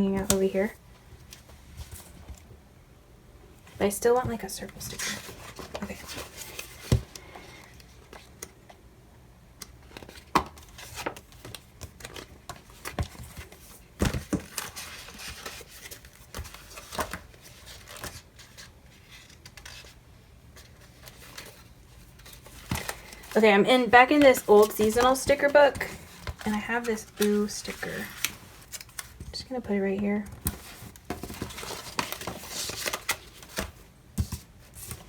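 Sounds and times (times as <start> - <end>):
pages being turned: 20.6 - 29.3, 30.4 - 35.0
paper sheets rustling: 20.6 - 29.4, 30.4 - 35.0.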